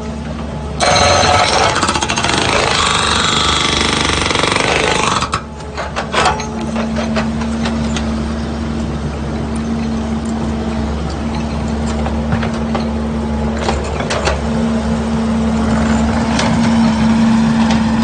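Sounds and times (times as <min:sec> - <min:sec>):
skid steer engine running: 0:00.0 - 0:18.0
hydraulic breaker hammering: 0:00.8 - 0:07.4.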